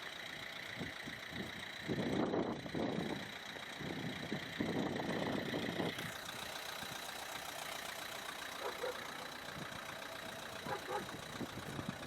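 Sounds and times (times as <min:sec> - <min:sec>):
diesel engine idling: 0:00.0 - 0:12.0.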